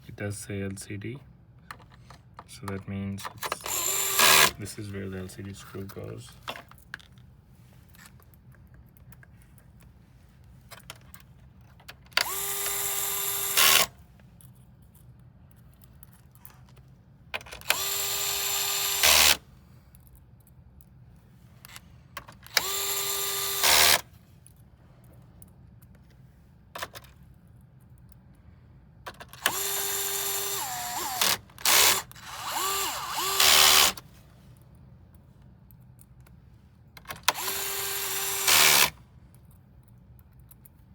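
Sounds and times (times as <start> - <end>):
electric screwdriver driving screws: 3.5 - 4.6, 12.2 - 13.9, 17.6 - 19.4, 22.5 - 24.0, 29.4 - 34.0, 37.2 - 39.0.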